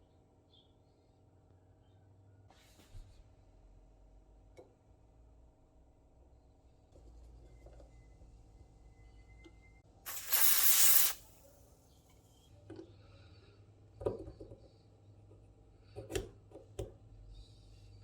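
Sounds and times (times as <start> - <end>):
aerosol spray hiss: 10.1 - 11.4.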